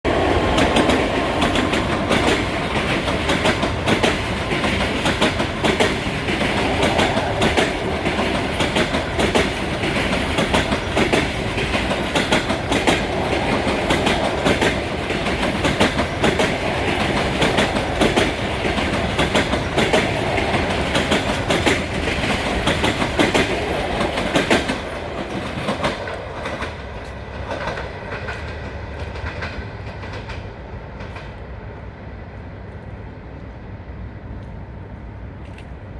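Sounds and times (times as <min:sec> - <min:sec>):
train passing at speed: 0:00.0 - 0:35.9.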